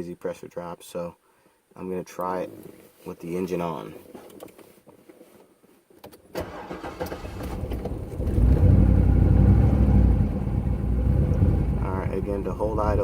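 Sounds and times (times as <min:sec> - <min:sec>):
car engine starting and idling rough: 0:06.4 - 0:13.0.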